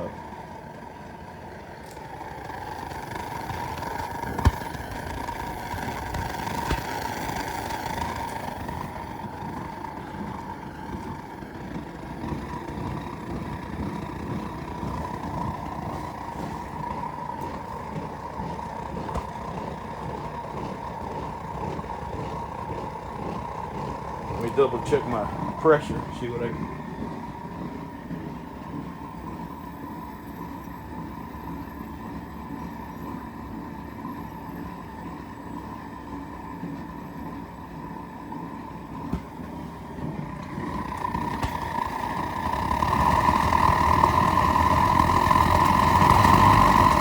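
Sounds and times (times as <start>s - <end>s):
gas forge roaring: 0.0s - 47.0s.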